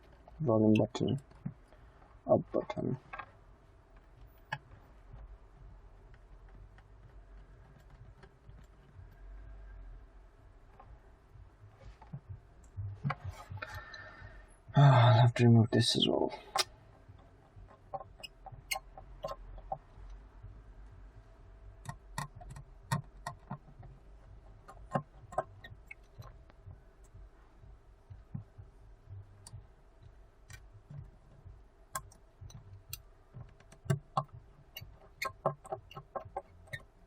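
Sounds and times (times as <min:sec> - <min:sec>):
faint steady hum: 0:00.0 - 0:37.0
hand tools clicking and tapping: 0:21.8 - 0:24.0, 0:24.6 - 0:26.6, 0:31.9 - 0:36.9.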